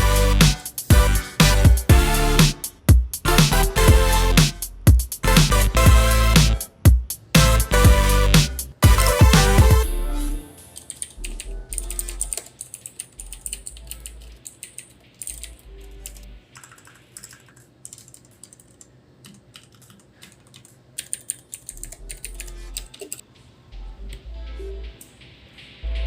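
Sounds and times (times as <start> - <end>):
mechanical keyboard typing: 10.8 - 23.2.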